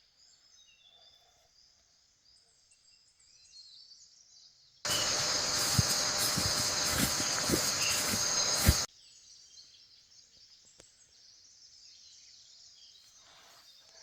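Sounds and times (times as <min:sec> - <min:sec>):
faint bird chirps: 0:00.0 - 0:14.0
high-pitched buzz: 0:04.9 - 0:08.9
rough noise: 0:04.9 - 0:08.9.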